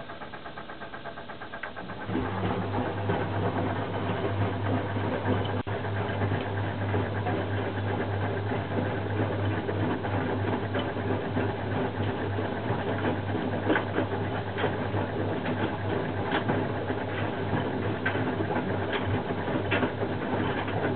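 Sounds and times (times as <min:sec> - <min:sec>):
washing machine running: 0:00.0 - 0:20.9.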